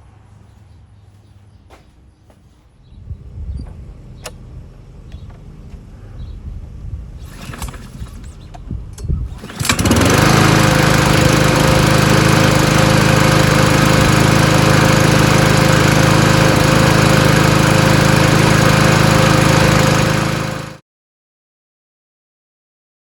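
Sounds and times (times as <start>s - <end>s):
lawn mower engine running: 3.1s - 20.8s.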